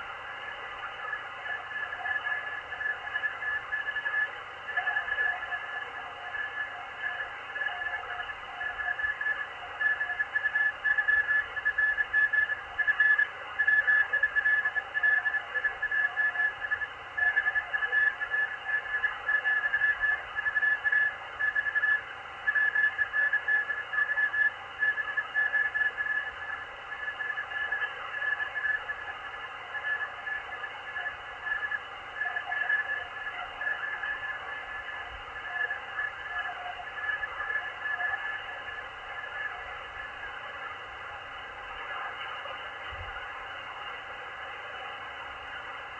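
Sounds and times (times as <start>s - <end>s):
radio band hiss: 0.0s - 45.9s.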